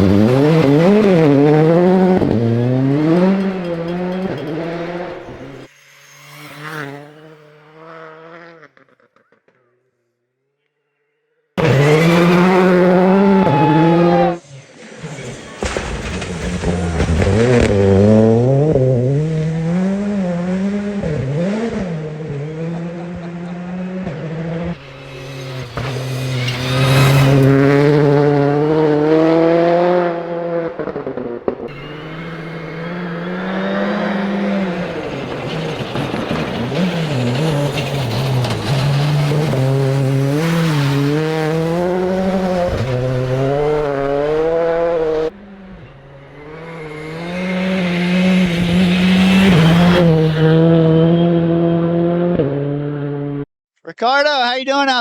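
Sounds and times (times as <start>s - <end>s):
race car engine at high revs: 0.0s - 9.1s, 11.6s - 53.5s
race car engine running: 31.7s - 52.9s.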